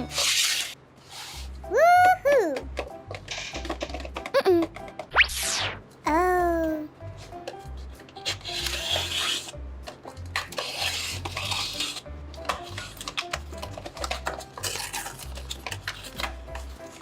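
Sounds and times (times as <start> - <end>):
paper rustling and scraping: 0.0 - 1.6, 7.8 - 17.0.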